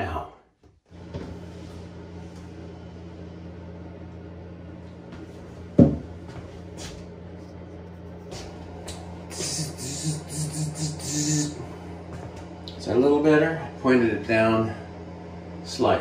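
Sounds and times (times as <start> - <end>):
steady low hum: 0.0 - 16.0
dull thump: 5.7 - 6.2.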